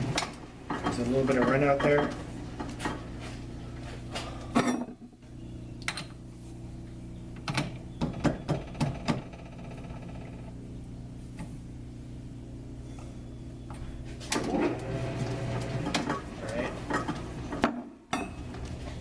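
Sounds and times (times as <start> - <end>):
sharp clicks and knocks: 7.4 - 10.4.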